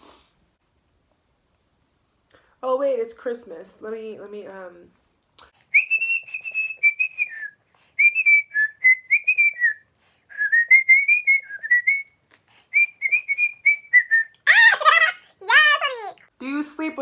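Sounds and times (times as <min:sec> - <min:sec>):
woman whistling a tune: 0:05.7 - 0:14.4.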